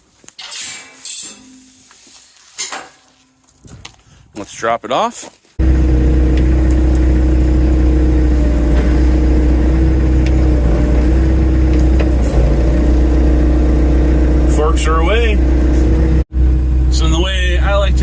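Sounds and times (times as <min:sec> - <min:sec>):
diesel engine running: 0:05.6 - 0:18.0.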